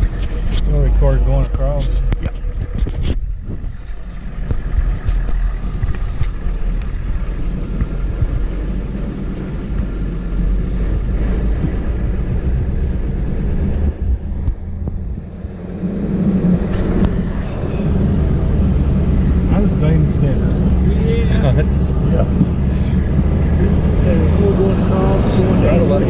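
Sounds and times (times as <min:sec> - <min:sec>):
vehicle engine and tyres rumbling: 0:00.0 - 0:26.0.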